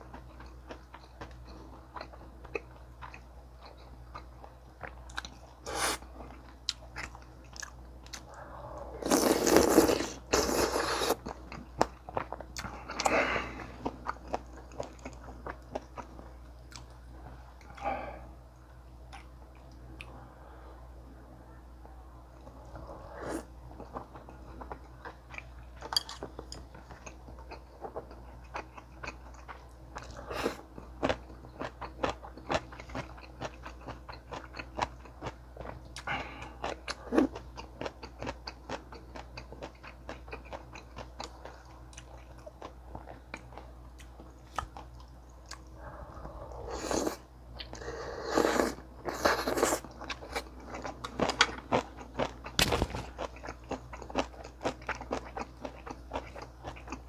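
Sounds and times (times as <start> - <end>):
steady low hum: 0.0 - 57.0
crunchy bites: 52.2 - 53.4.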